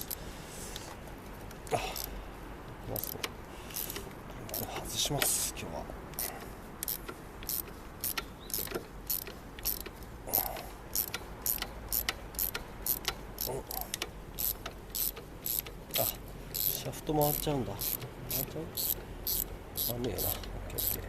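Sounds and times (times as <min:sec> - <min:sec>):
ratchet wrench clicking: 0:01.8 - 0:02.2, 0:03.0 - 0:04.8, 0:06.1 - 0:21.0.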